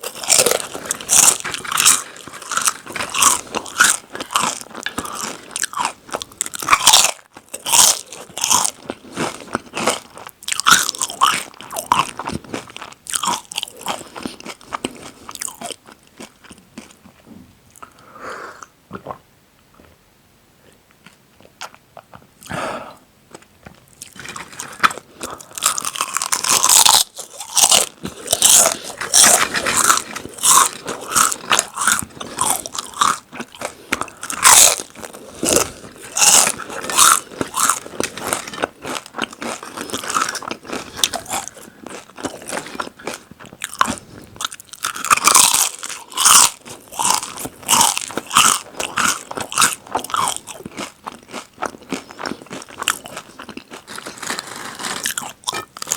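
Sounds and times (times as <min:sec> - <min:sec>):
crisp chips crunching: 0:00.0 - 0:17.2, 0:23.3 - 0:55.9.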